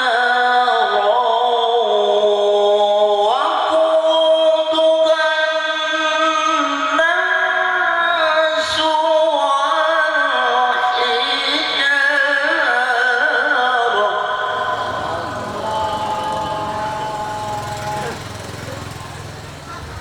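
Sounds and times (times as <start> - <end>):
man reciting melodically: 0.0 - 19.8.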